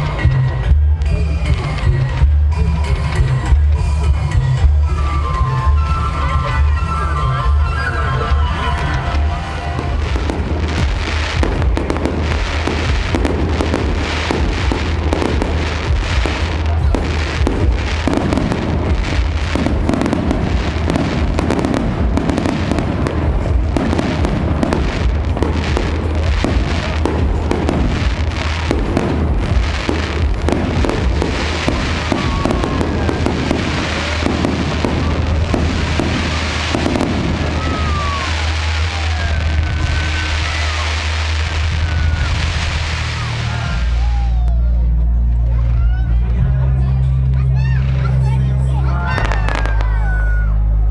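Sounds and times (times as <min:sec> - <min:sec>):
fireworks bursts and crackling bangs: 0:00.0 - 0:44.5, 0:46.2 - 0:50.9
music playing: 0:00.0 - 0:50.9
fireworks falling whistles: 0:04.8 - 0:44.3.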